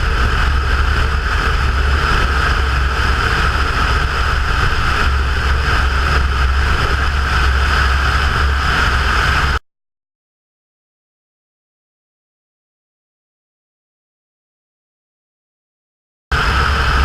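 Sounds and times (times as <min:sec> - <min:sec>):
airplane engine and propeller droning: 0:00.0 - 0:09.6, 0:16.3 - 0:17.0.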